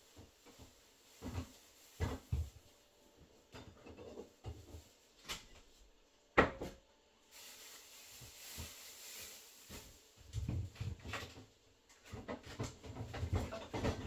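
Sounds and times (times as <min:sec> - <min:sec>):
soft hiss: 0:07.2 - 0:10.3.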